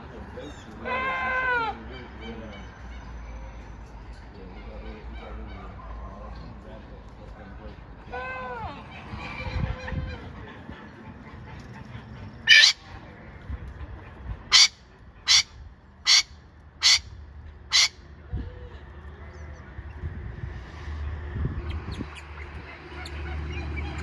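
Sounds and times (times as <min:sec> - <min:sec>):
farm bird harsh calls: 0:11.3 - 0:13.0, 0:14.5 - 0:18.0.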